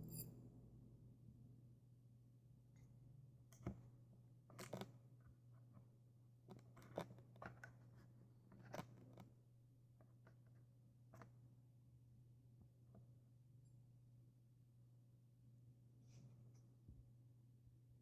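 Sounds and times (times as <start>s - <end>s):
steady low hum: 0.0s - 1.7s.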